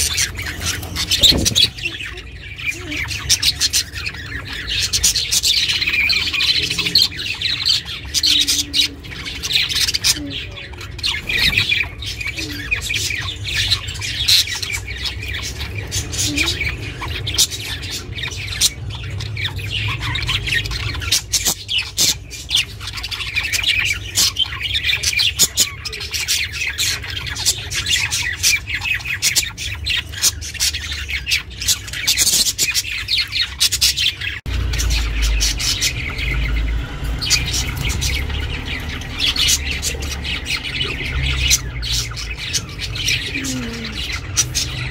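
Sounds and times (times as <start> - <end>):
budgerigars chirping and squawking: 0.0 - 44.9.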